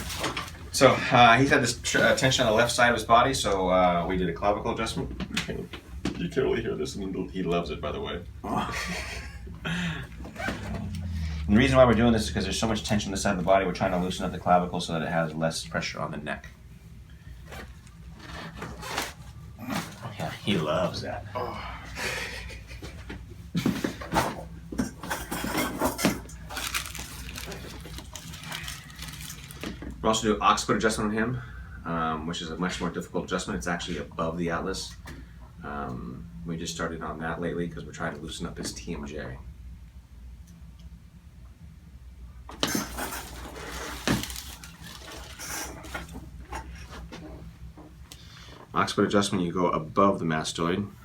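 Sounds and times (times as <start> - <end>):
rustling handling noise: 0.0 - 2.9, 17.2 - 21.1, 22.8 - 30.0, 42.6 - 48.0.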